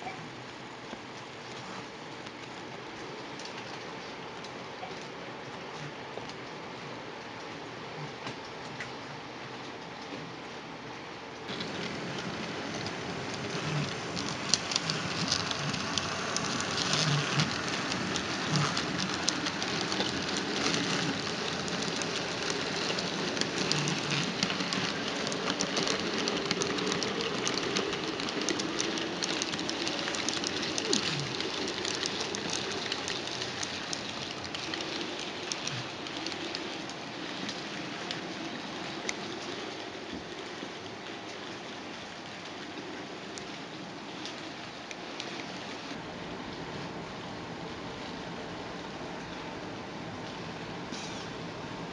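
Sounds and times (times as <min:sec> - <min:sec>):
model train wheels clicking on rails: 0:11.4 - 0:41.8.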